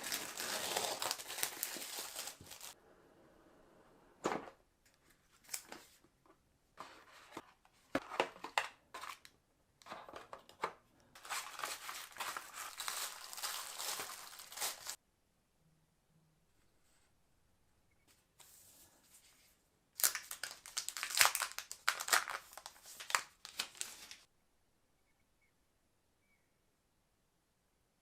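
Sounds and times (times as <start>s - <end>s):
packaging clicks and rustles: 0.0s - 2.8s, 8.0s - 15.0s, 20.0s - 24.2s
packaging crinkling: 0.0s - 2.8s, 11.2s - 15.0s, 20.0s - 24.3s.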